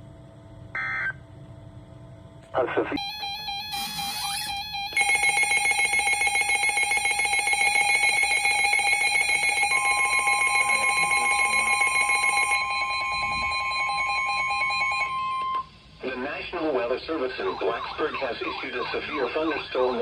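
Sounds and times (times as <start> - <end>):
fast-pulsing electronic alarm: 3.0 - 15.7, 17.4 - 20.0
steady single-pitch alarm tone: 3.0 - 15.8.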